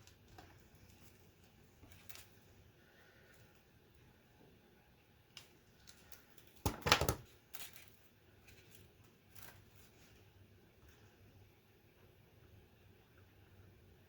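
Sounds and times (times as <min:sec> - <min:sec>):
plastic parts clicking and tapping: 0:05.9 - 0:07.9.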